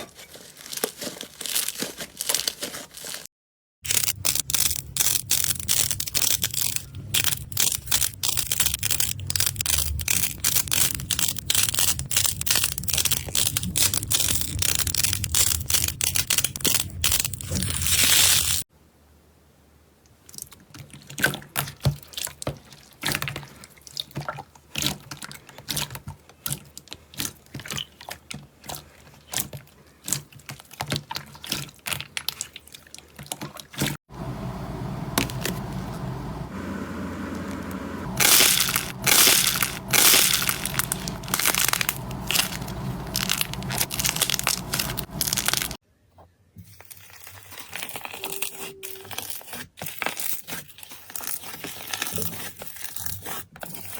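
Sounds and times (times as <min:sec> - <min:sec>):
slime crackling and popping: 0:03.9 - 0:18.6, 0:38.1 - 0:45.8.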